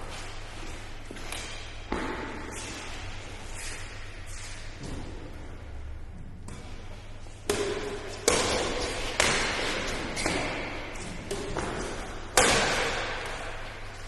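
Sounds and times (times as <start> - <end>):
badminton racket hitting shuttlecock: 7.4 - 13.9.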